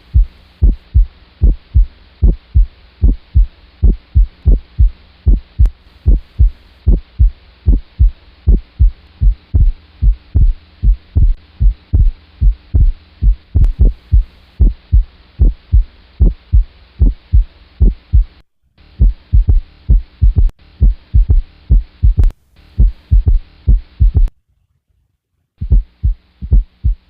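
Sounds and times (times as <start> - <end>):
heartbeat through stethoscope: 0.0 - 18.4, 19.0 - 24.3, 25.6 - 27.0
faint steady hum: 0.0 - 27.0.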